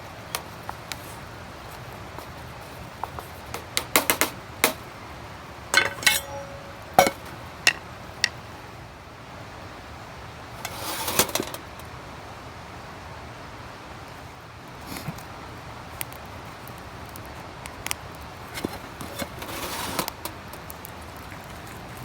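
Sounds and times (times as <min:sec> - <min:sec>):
cookware scraping: 0:05.8 - 0:08.4
metal cookware clinking: 0:05.8 - 0:08.4.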